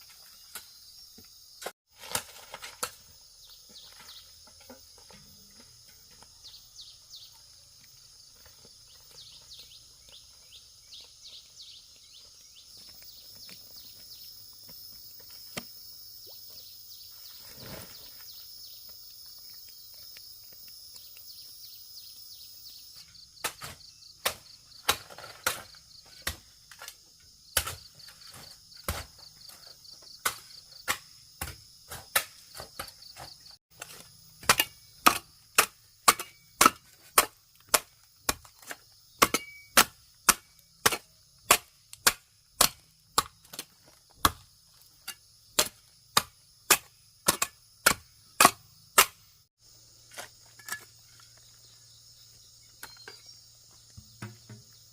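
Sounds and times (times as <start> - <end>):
insects trilling: 0.0 - 54.9
hand tool striking wood: 30.2 - 49.3.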